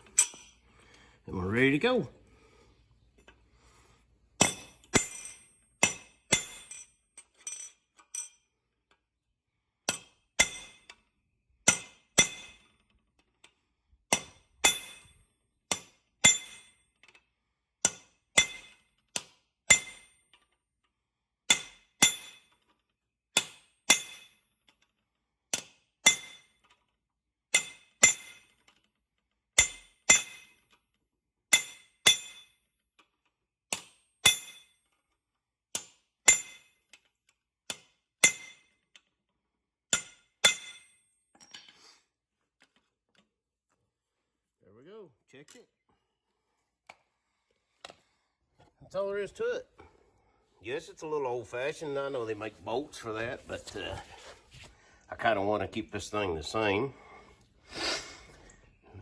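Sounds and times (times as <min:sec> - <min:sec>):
hammer striking steel rivets: 0:00.1 - 0:00.6, 0:04.4 - 0:08.4, 0:09.9 - 0:11.0, 0:11.6 - 0:13.0, 0:14.1 - 0:17.1, 0:17.8 - 0:20.4, 0:21.5 - 0:22.8, 0:23.4 - 0:24.9, 0:25.5 - 0:26.8, 0:27.5 - 0:28.8, 0:29.6 - 0:30.9, 0:31.5 - 0:33.1, 0:33.7 - 0:35.0, 0:35.7 - 0:39.1, 0:39.9 - 0:41.8.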